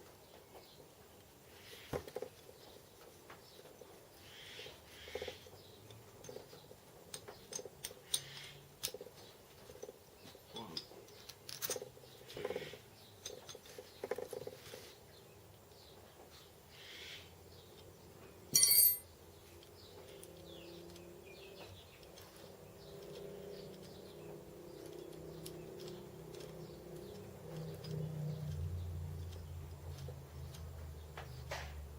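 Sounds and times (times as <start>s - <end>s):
small metal parts clicking: 4.6s - 14.8s, 17.6s - 31.9s.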